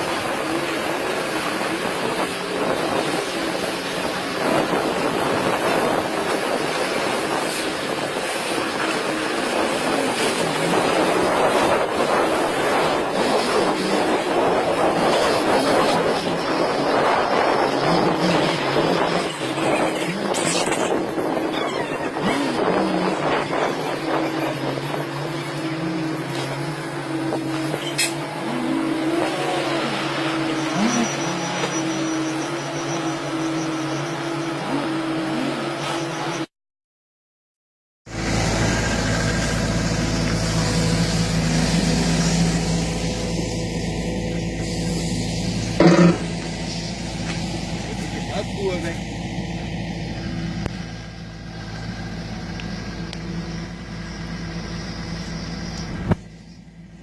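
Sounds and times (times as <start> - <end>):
vehicle engine running: 38.1 - 57.0.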